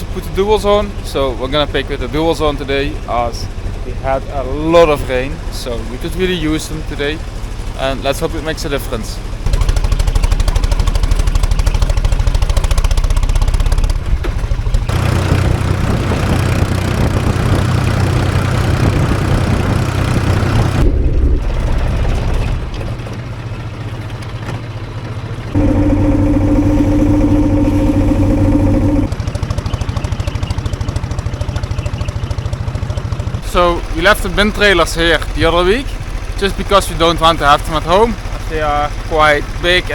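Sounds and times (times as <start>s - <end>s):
tractor engine running: 0.0s - 39.9s
steady whine: 25.6s - 29.1s.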